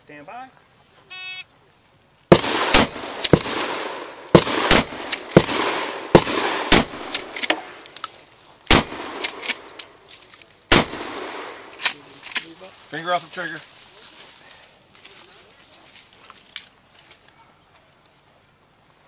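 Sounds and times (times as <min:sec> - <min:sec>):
shot timer beep: 0:01.1 - 0:01.5
shotgun shots: 0:02.3 - 0:07.8, 0:08.7 - 0:09.9, 0:10.7 - 0:12.1.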